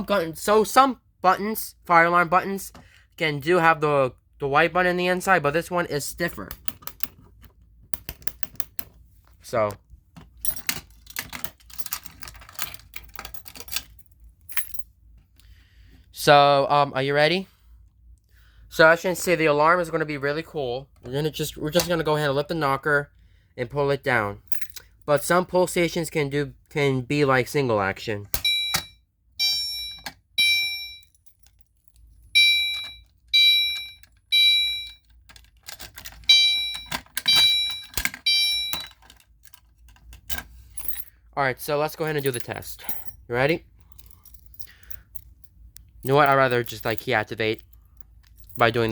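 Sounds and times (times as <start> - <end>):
fire alarm pull station clicking: 28.4 - 31.1, 32.4 - 39.2.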